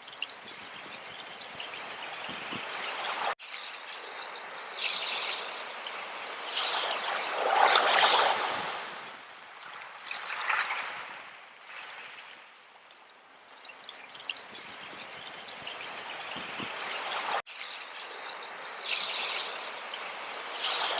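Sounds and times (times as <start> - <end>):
sea water washing over seashells: 3.0 - 12.9, 16.4 - 20.9.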